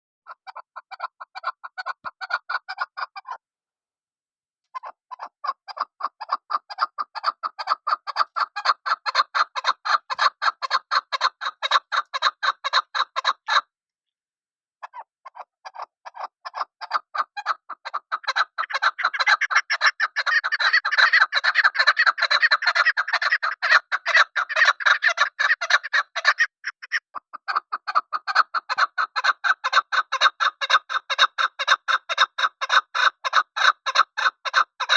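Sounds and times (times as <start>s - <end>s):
partridge clucking: 14.9s - 34.9s.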